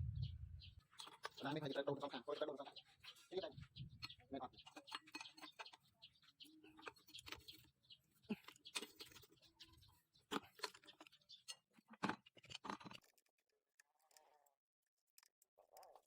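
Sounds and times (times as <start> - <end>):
tools and engine parts clicking: 0.9 - 1.5, 4.0 - 5.9, 6.7 - 9.5, 10.2 - 16.0.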